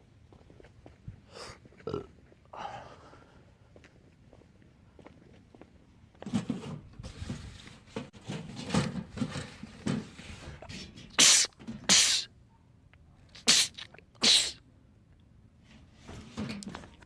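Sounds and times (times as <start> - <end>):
breathy build-up before sneeze: 10.6 - 12.3, 13.4 - 14.6
man sneezing: 11.2 - 12.3, 13.4 - 14.6.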